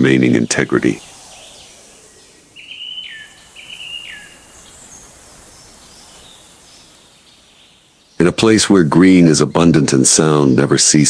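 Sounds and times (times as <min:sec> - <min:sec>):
whistled bird calls: 0:00.0 - 0:08.4
faint forest background: 0:00.0 - 0:11.0.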